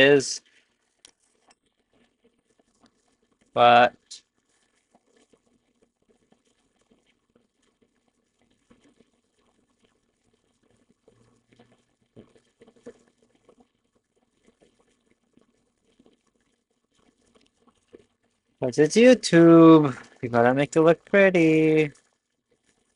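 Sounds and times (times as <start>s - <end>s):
faint small clicks and taps: 0.4s - 3.6s, 4.2s - 18.4s.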